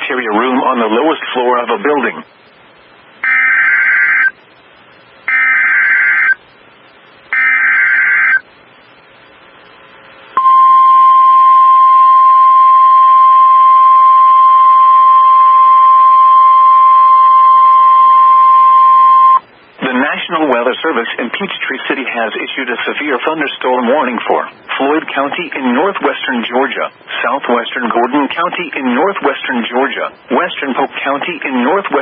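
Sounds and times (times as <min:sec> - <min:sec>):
steady warning alarm tone: 0:05.3 - 0:06.4, 0:07.3 - 0:08.4, 0:10.4 - 0:19.4.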